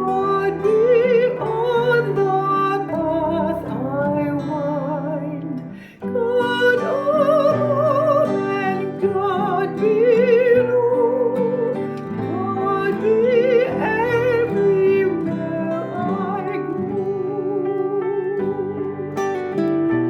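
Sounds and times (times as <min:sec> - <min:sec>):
person singing with vibrato: 0:00.0 - 0:19.6
instrumental accompaniment: 0:00.0 - 0:20.0.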